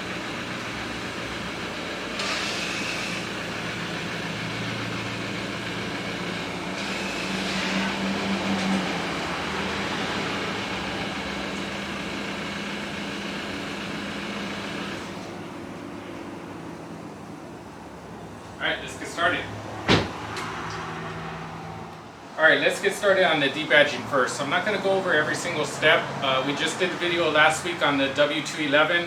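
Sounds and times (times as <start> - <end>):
car engine running: 0.0 - 15.8.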